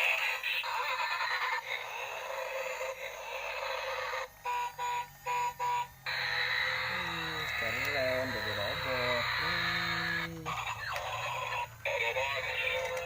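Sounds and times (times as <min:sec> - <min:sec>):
static-like hissing: 0:00.0 - 0:13.0.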